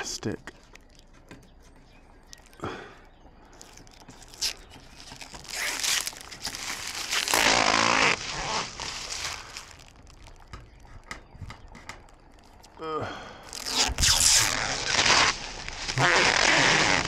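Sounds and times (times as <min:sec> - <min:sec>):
plastic film peeling and rustling: 0:03.6 - 0:10.9, 0:13.5 - 0:17.0.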